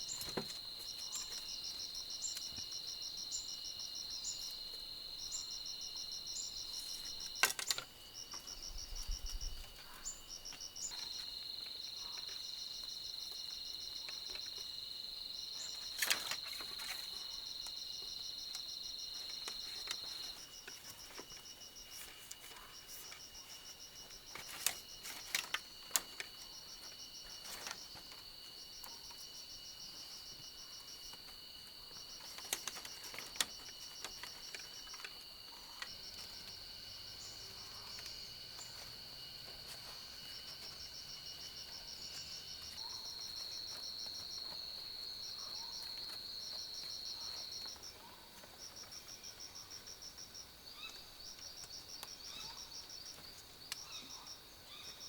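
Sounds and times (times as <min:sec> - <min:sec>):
fast pulsed insect chirps: 0:00.0 - 0:11.2
insects buzzing trills: 0:00.0 - 0:55.0.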